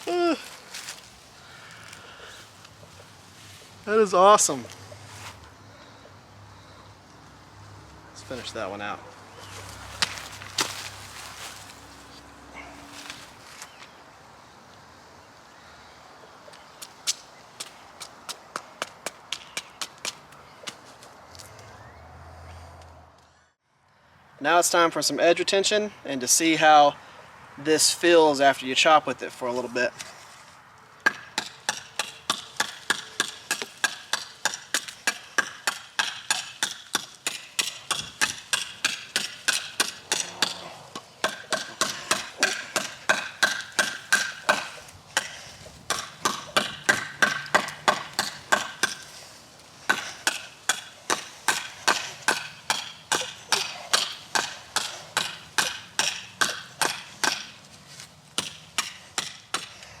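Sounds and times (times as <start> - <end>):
cleaver chopping into wood: 31.0 - 49.2, 49.9 - 57.6, 58.4 - 59.8.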